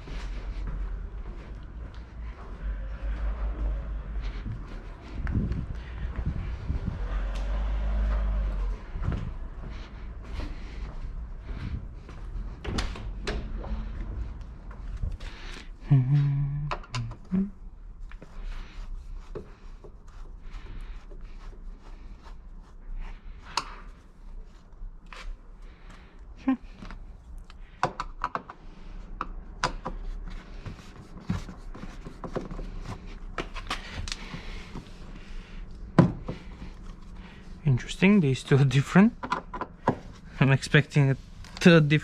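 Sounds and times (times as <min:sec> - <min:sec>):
hand tools clicking and knocking: 0:39.2 - 0:40.1.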